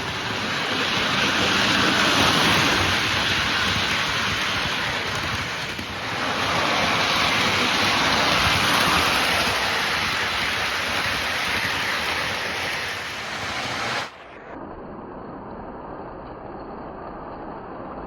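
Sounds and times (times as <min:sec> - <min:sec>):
toy train whirring on rails: 0:00.0 - 0:14.1.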